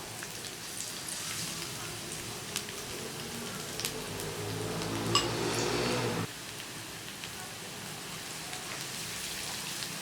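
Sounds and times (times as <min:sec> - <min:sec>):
wings sizzling in a pan: 0:00.0 - 0:10.0.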